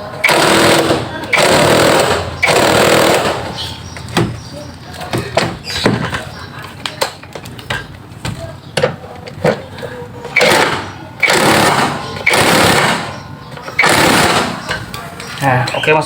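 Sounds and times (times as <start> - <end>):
rapid rattling of wrench: 0.2 - 3.8, 8.8 - 15.3.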